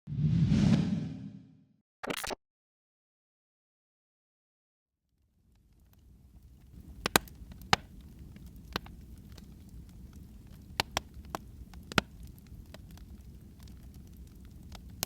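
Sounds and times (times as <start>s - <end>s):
wood fire crackling and popping: 5.4s - 15.0s.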